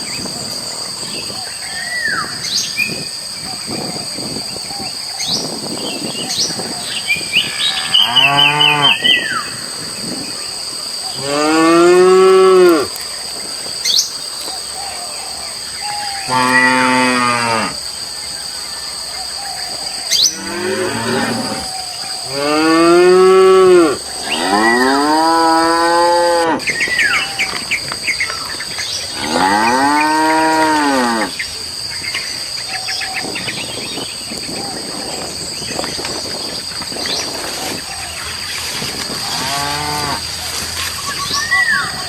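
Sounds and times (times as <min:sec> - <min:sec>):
cattle mooing: 0:16.3 - 0:17.8, 0:20.3 - 0:26.6.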